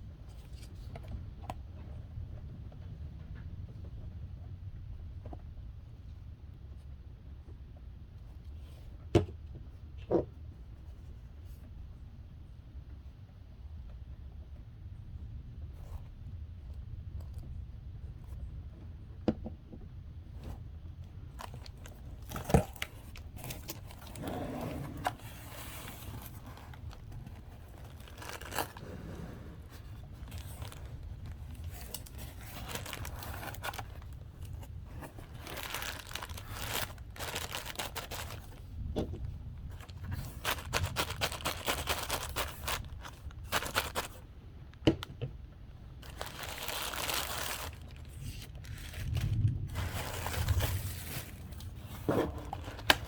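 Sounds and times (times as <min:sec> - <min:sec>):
packaging tearing and crinkling: 0:25.0 - 0:38.7, 0:39.7 - 0:44.2, 0:46.0 - 0:53.0.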